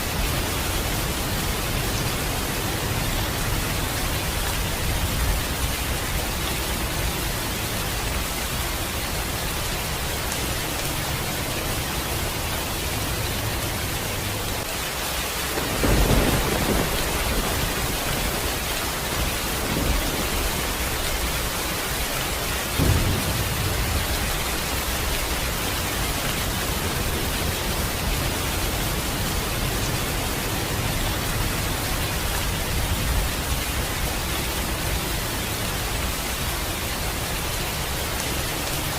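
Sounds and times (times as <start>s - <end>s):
steady rain: 0.0s - 38.9s
thunder claps: 15.5s - 30.0s.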